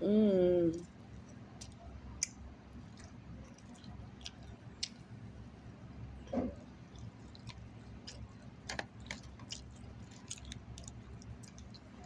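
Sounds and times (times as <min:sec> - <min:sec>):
person chewing food: 0:00.8 - 0:05.6, 0:06.4 - 0:12.0
wet mouth clicks and smacks: 0:03.0 - 0:05.1.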